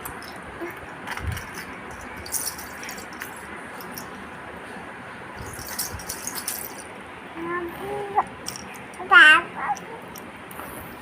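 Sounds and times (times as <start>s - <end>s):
light clicks and rustles: 0.0s - 4.1s.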